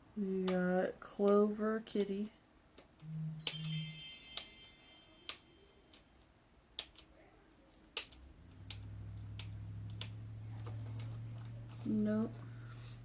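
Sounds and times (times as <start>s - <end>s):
steady low hum: 3.0s - 4.0s.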